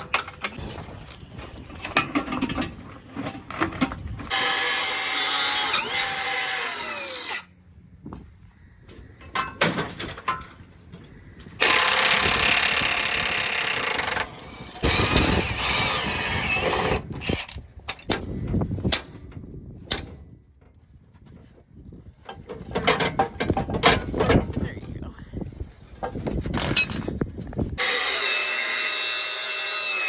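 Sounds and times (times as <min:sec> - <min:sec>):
metal clanks and knocks: 0:01.7 - 0:04.4, 0:22.3 - 0:24.6
cordless power tool running: 0:04.3 - 0:07.5.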